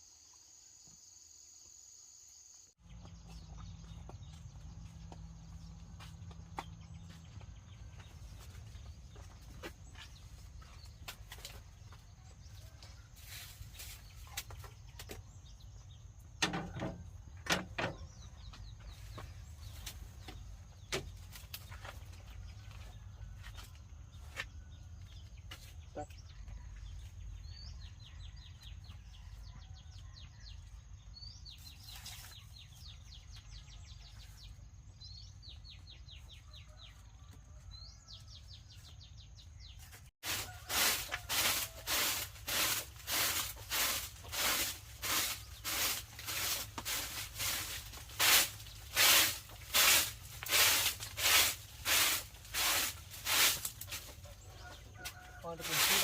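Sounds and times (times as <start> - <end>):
small birds chirping trills: 0.0 - 56.0.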